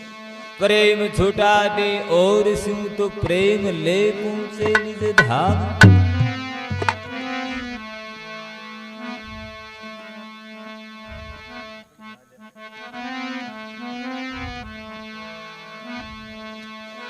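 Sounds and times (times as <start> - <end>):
keyboard melody: 1.4 - 7.9
low drum strokes: 4.6 - 7.2.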